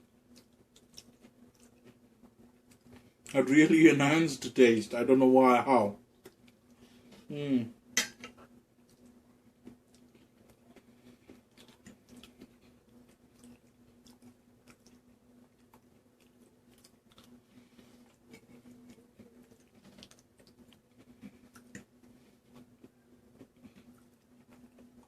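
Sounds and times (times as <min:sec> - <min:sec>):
person chewing: 0:00.3 - 0:03.4, 0:08.8 - 0:25.0.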